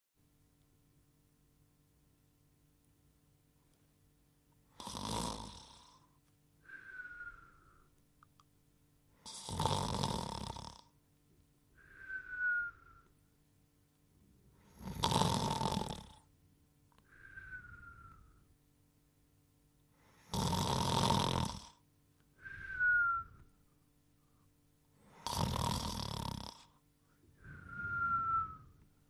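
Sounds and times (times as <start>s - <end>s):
cartoon snoring: 4.7s - 6.1s, 9.2s - 10.9s, 14.7s - 16.3s, 20.2s - 21.8s, 25.1s - 26.8s
falling whistle on out-breath: 6.7s - 7.9s, 11.8s - 13.1s, 17.1s - 18.5s, 22.4s - 23.5s, 27.4s - 28.8s.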